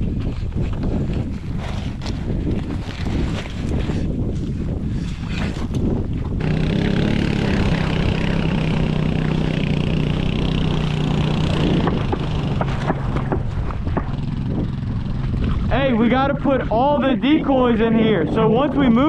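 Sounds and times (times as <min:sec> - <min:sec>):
churning slushy water: 0:00.0 - 0:19.0
quad bike engine running: 0:06.3 - 0:16.9
sharp clicks and knocks: 0:11.5 - 0:14.7.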